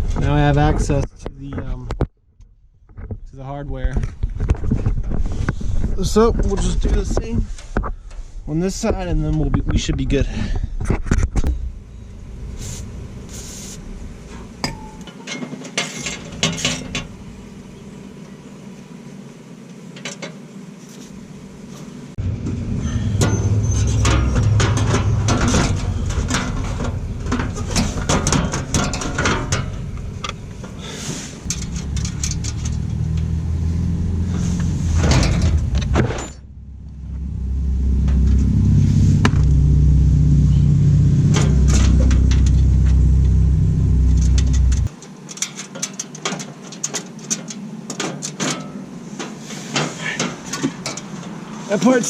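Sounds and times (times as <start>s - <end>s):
loud low rumble: 11.4s - 15.1s, 22.2s - 30.8s, 31.5s - 44.9s.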